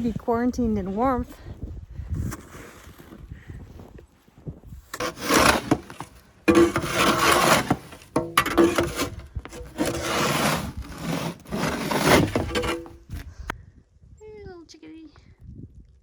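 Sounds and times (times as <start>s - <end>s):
snow shovel scraping wet snow: 2.3s - 3.2s, 4.9s - 13.2s.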